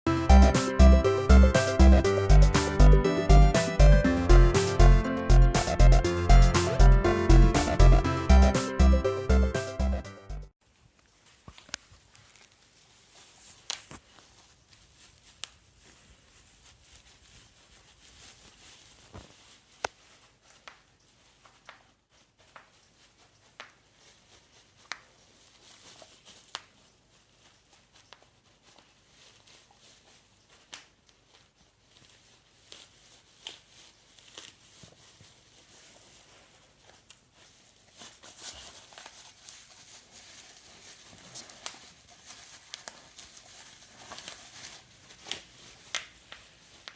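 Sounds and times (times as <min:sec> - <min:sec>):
plastic sheet crinkling: 0:10.6 - 0:46.9
bubble wrap popping: 0:11.2 - 0:20.9, 0:37.9 - 0:46.9.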